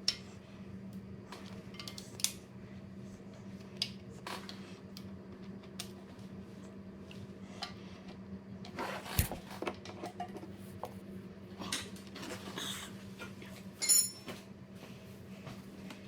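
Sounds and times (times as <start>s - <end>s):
high metallic ring: 13.8s - 14.3s
metal tools clinking and knocking: 13.8s - 14.3s.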